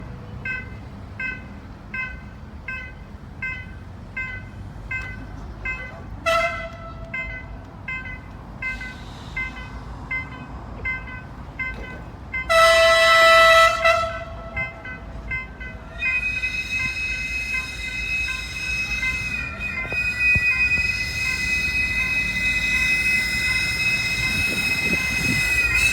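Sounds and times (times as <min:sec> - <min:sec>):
train horn blasts: 0:06.2 - 0:07.4, 0:12.5 - 0:25.9.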